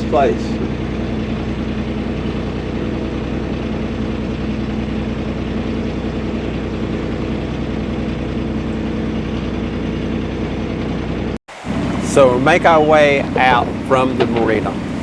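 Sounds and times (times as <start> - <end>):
boat engine running: 0.0 - 15.0.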